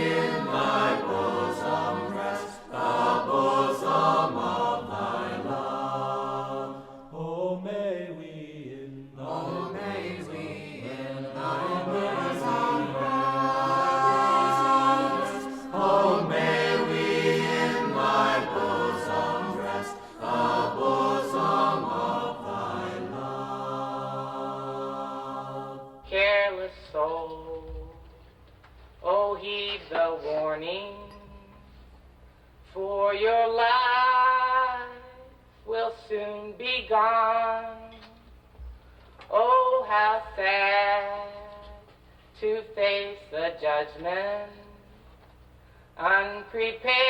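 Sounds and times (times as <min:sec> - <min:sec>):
choir singing a hymn: 0:00.0 - 0:27.1.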